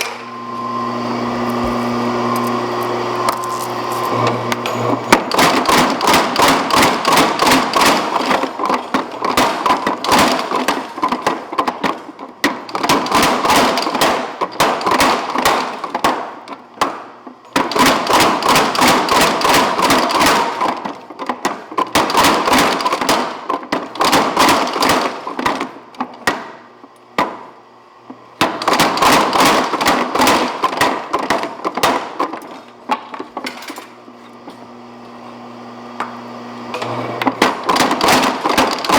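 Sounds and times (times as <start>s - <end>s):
power hammer pounding steel: 4.2s - 26.6s.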